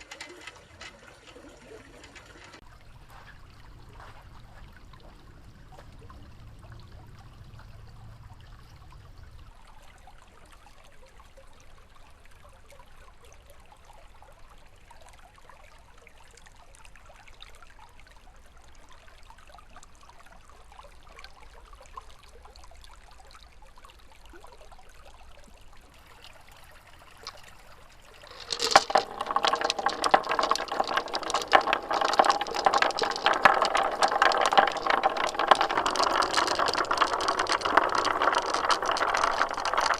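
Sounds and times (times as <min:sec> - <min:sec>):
marbles rolling along a track: 0:00.0 - 0:09.4, 0:26.0 - 0:39.9
many marbles clattering: 0:26.0 - 0:39.9.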